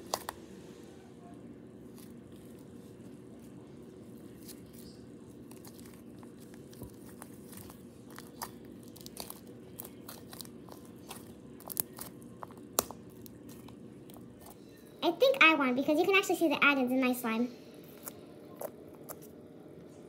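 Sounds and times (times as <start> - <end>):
steady low hum: 0.0 - 20.0
slime sticky clicks and crackles: 4.4 - 14.6.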